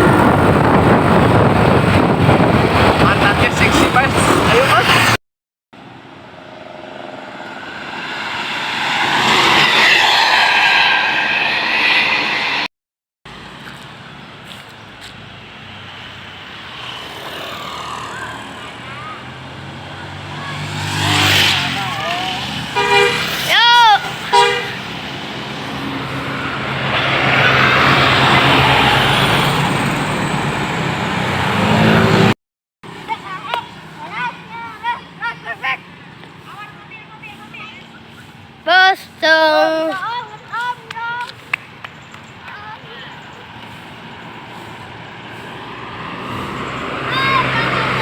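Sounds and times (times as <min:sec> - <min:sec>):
bus passing at speed: 0:00.0 - 0:05.2, 0:05.8 - 0:12.7, 0:13.3 - 0:48.0
steady traffic noise: 0:00.0 - 0:05.2, 0:05.8 - 0:12.7, 0:13.3 - 0:48.0
bus musical horn note: 0:22.7 - 0:23.4, 0:24.0 - 0:24.9.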